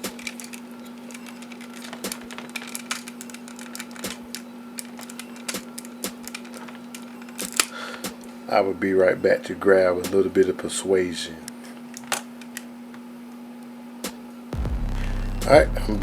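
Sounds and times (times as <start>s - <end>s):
plastic parts clicking: 0.0s - 8.4s, 11.5s - 12.7s
steady low hum: 14.6s - 16.0s.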